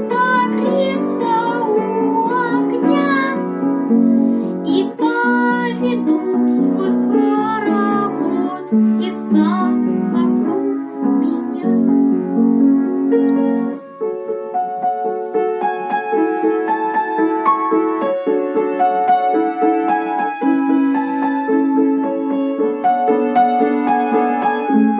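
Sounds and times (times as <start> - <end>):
child singing: 0.0 - 3.4, 4.6 - 11.9
piano accompaniment: 0.0 - 24.9.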